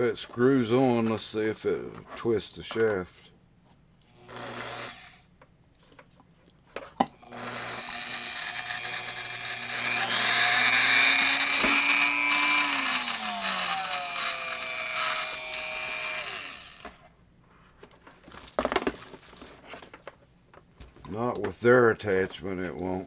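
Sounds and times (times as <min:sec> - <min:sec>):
rotary tool motor whining: 0:04.2 - 0:05.2, 0:07.3 - 0:17.0.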